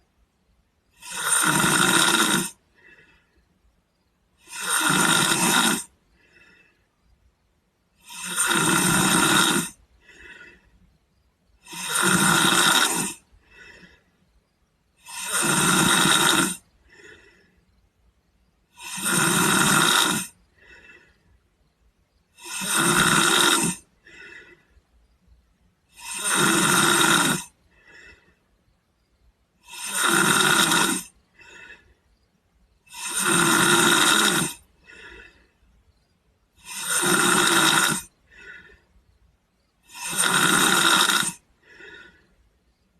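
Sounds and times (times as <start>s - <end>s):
boy snoring: 0.9s - 3.3s, 4.4s - 6.7s, 8.0s - 10.7s, 11.6s - 14.0s, 15.0s - 17.6s, 18.7s - 21.2s, 22.3s - 24.7s, 25.9s - 28.4s, 29.6s - 32.0s, 32.8s - 35.5s, 36.5s - 38.8s, 39.8s - 42.2s
faint breath: 2.6s - 4.4s, 5.9s - 7.6s, 9.7s - 11.6s, 13.2s - 14.9s, 16.8s - 18.6s, 20.3s - 22.1s, 23.8s - 25.5s, 27.5s - 29.3s, 31.0s - 32.8s, 34.6s - 36.4s, 38.0s - 39.9s, 41.4s - 42.9s.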